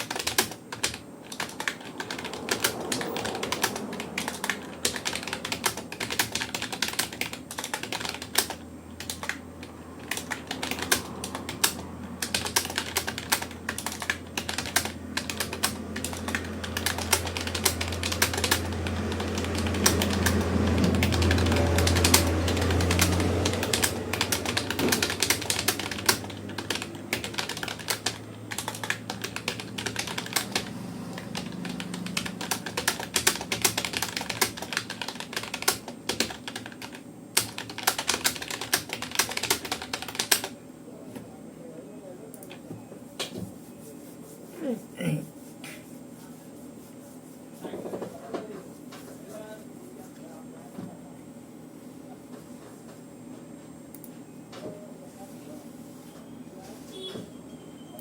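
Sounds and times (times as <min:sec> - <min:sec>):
keyboard typing clicks: 0:00.0 - 0:40.5
low background hum: 0:00.0 - 0:58.0.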